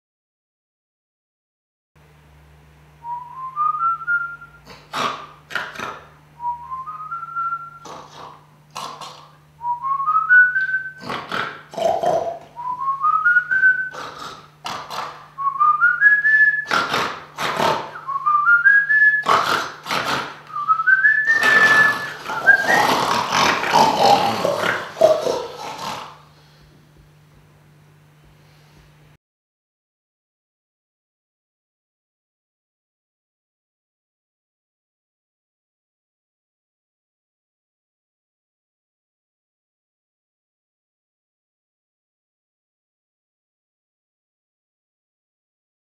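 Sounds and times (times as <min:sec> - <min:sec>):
snoring snorts: 0:04.6 - 0:06.1, 0:07.8 - 0:09.4, 0:11.0 - 0:12.5, 0:13.9 - 0:15.3, 0:16.6 - 0:18.0, 0:19.1 - 0:20.6, 0:21.2 - 0:26.3
short rising whistled phrase: 0:20.6 - 0:22.9.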